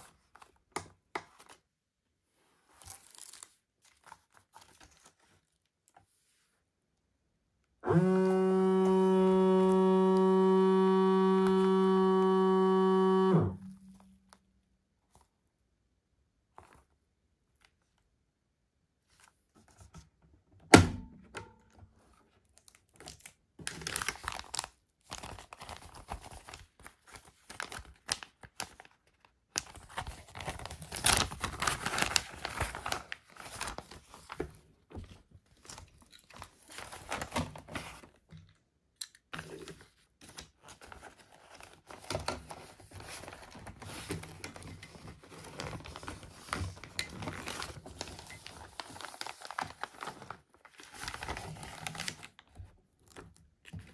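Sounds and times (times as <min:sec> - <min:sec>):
plastic crinkling and tearing: 0:02.7 - 0:05.6, 0:22.4 - 0:34.7, 0:39.4 - 0:53.9.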